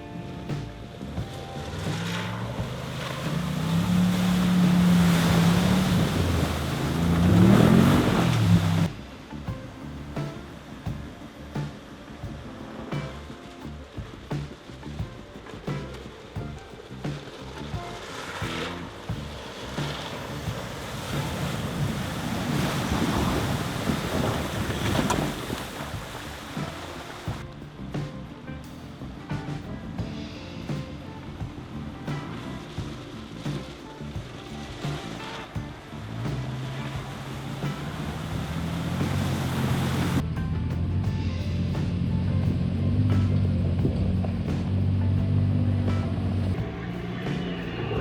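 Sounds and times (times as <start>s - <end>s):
water rushing and splashing: 0.0s - 40.3s
wind buffeting microphone: 0.6s - 8.9s, 9.5s - 27.9s, 28.9s - 40.2s
vehicle engine pulling under load: 1.2s - 8.9s, 16.8s - 27.4s, 31.2s - 48.0s.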